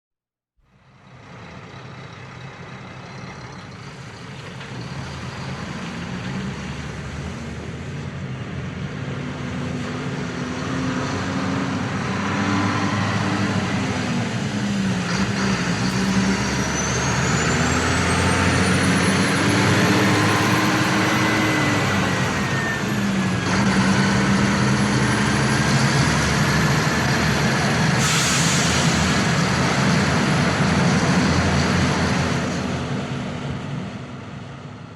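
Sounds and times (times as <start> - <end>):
large vehicle engine approaching: 0.7 - 34.9
high whine: 11.6 - 30.0.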